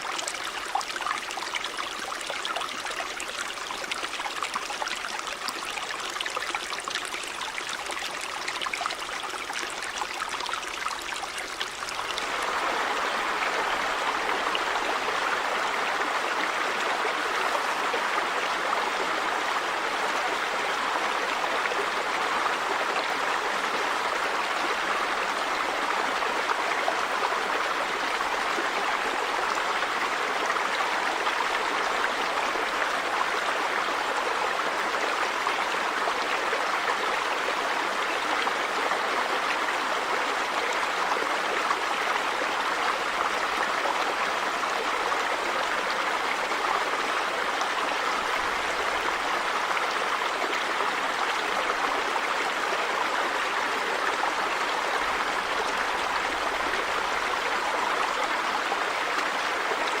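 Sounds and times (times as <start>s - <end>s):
river water over rocks: 0.0s - 60.0s.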